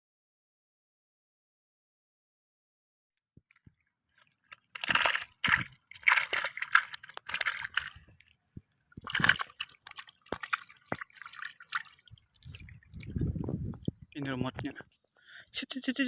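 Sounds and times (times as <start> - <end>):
wet squelching and sloshing: 3.5 - 14.2.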